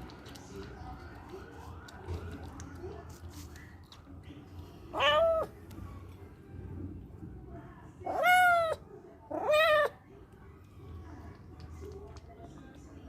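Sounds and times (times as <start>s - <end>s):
kitten meowing: 4.9s - 5.6s, 8.1s - 9.9s.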